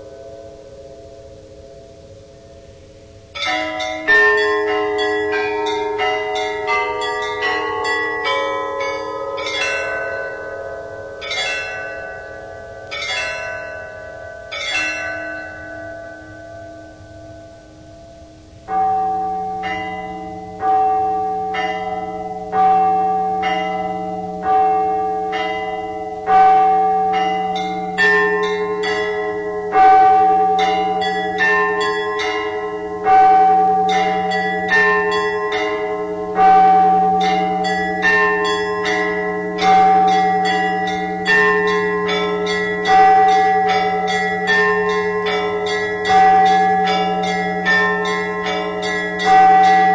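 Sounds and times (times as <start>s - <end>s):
lighter church bells ringing: 0.0s - 49.9s
small bells chiming quickly: 3.4s - 10.6s, 25.3s - 49.9s
deep bell striking: 3.4s - 49.9s.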